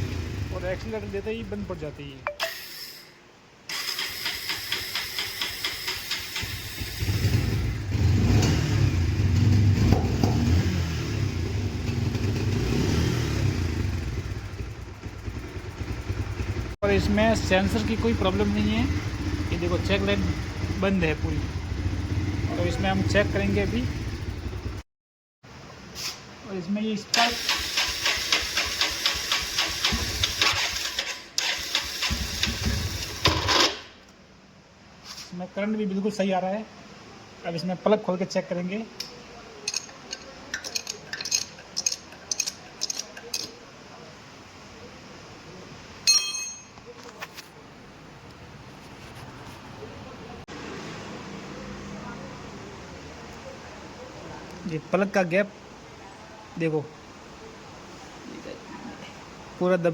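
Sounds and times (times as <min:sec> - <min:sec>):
motorcycle engine running rough: 0:00.0 - 0:01.7, 0:06.8 - 0:24.8, 0:28.1 - 0:30.9.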